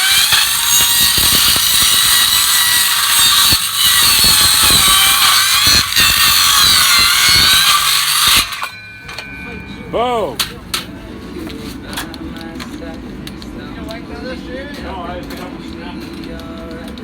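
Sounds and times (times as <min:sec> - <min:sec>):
power tool whining at high speed: 0:00.0 - 0:08.8.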